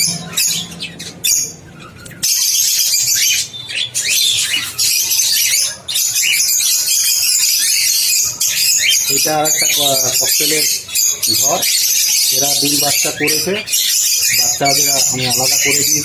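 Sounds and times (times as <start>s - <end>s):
parrots chirping and squawking: 0.0s - 16.0s.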